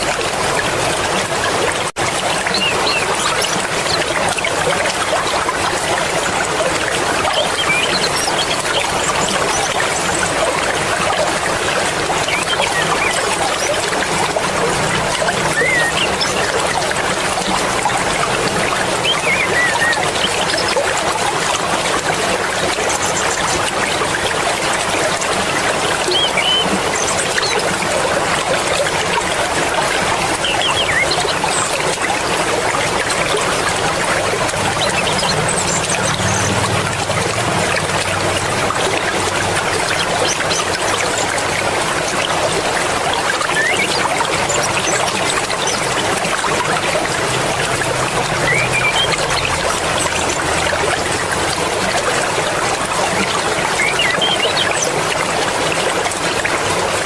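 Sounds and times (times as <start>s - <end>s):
river water rushing: 0.0s - 57.0s.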